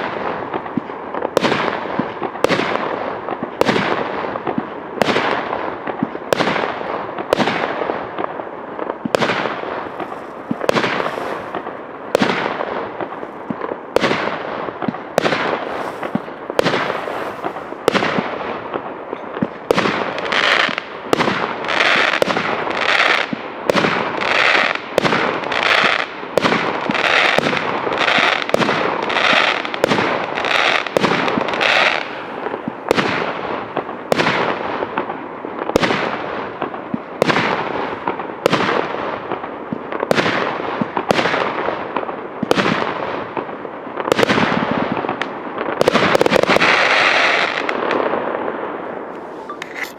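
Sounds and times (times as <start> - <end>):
firework crackling: 0.0 - 49.9
firework cake bangs: 8.9 - 24.2.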